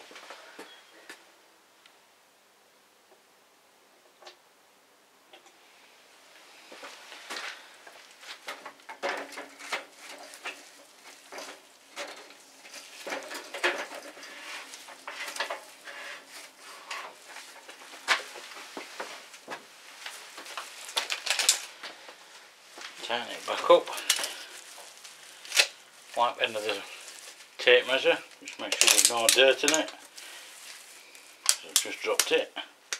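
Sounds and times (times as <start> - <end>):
plastic bottles and tools rattling: 6.8 - 32.9.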